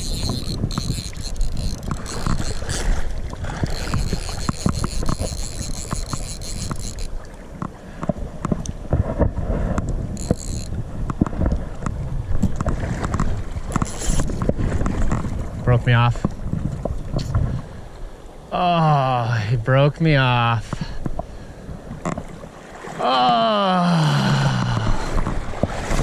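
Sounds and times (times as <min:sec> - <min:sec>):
water sloshing and splashing: 0:00.0 - 0:18.1, 0:20.6 - 0:26.0
wind rumbling on microphone: 0:00.0 - 0:18.4, 0:24.1 - 0:26.0.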